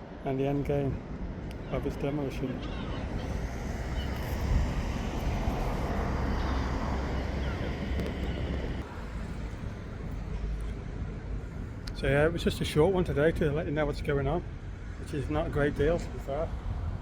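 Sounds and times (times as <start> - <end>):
vehicle low rumble: 0.0 - 17.0.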